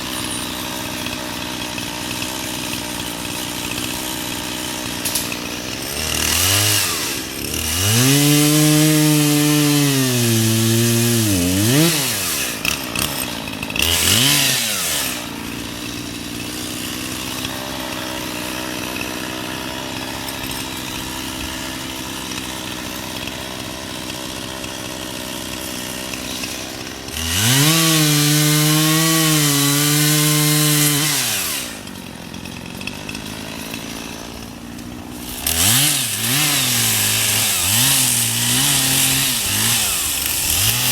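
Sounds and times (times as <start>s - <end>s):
chainsaw revving and cutting wood: 0.0s - 40.9s.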